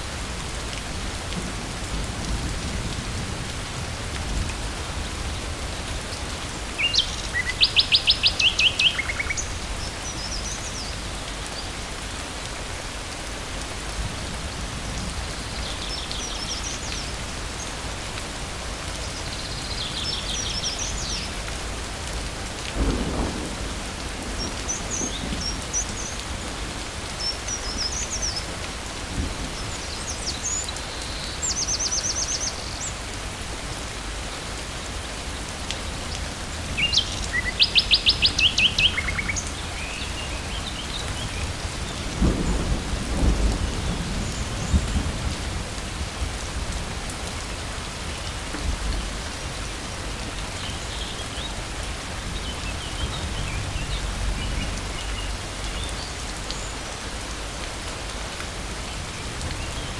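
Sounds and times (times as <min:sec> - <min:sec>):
steady rain in a forest: 0:00.0 - 0:59.9
low rumble of thunder: 0:00.4 - 0:06.7, 0:22.5 - 0:30.0, 0:40.4 - 0:49.6, 0:51.8 - 0:56.5.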